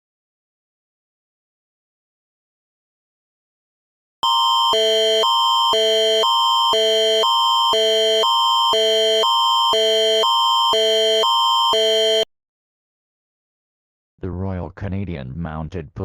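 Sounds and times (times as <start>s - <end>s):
alternating alert chords: 4.2s - 12.2s
steady high tone: 4.2s - 12.2s.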